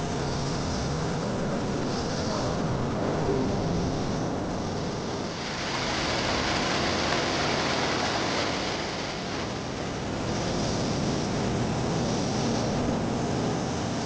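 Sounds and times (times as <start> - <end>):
stream water rushing: 5.3 - 9.8.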